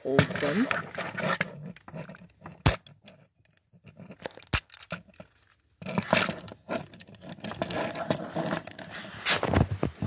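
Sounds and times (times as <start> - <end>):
plastic toy clicks: 1.3 - 5.2.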